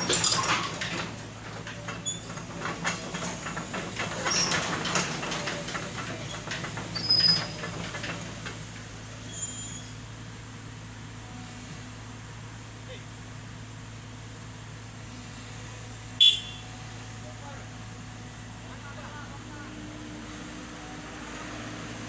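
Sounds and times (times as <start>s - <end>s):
metal clanks and knocks: 0.0s - 9.0s
excavator engine running: 0.0s - 22.0s
high-pitched metal squeals: 9.2s - 10.0s.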